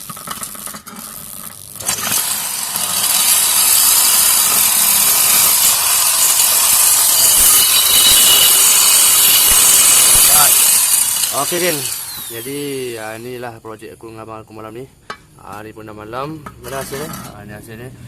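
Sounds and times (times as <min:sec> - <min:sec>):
electric drill grinding into steel: 0:01.8 - 0:13.4.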